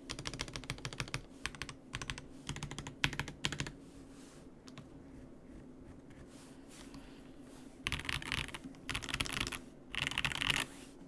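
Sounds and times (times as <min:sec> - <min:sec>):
mechanical keyboard typing: 0:00.1 - 0:03.8, 0:07.9 - 0:10.7.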